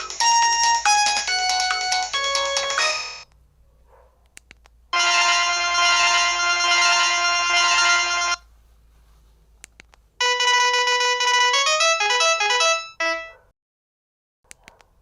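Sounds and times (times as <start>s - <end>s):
synthesized phone ringtone: 0.0s - 3.2s, 5.0s - 8.4s, 10.2s - 13.4s.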